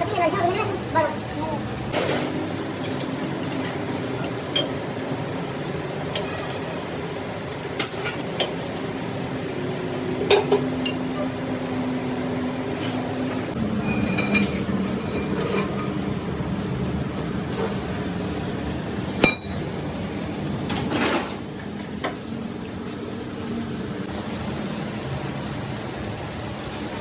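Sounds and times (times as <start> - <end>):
low machine hum: 0.0 - 27.0
metal tools clinking: 13.7 - 15.8, 20.7 - 21.5.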